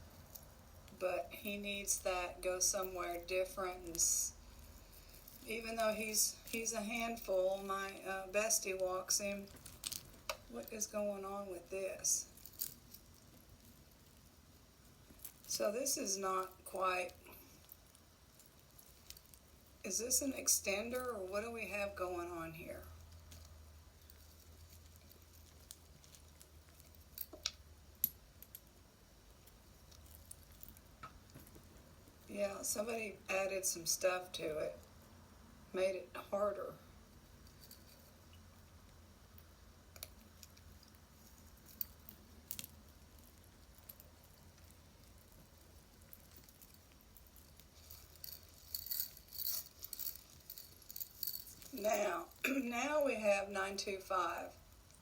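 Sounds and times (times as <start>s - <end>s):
jewelry clicking and jingling: 0.0s - 35.1s, 36.9s - 55.0s
low steady hum: 0.0s - 55.0s
necklace clicks and taps: 24.2s - 28.7s.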